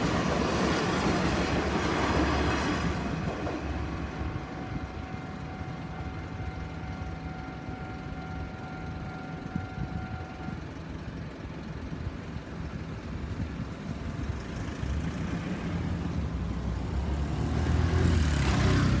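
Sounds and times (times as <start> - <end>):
vehicle engine rumble: 0.0 - 19.0
faint steady high tone: 4.2 - 11.2.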